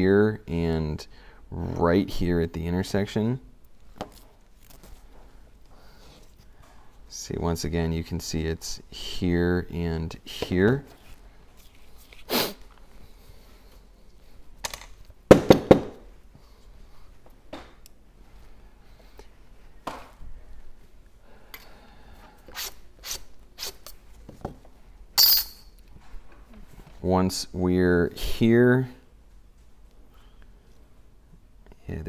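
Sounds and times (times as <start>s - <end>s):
tools and small parts clinking: 25.2s - 25.8s.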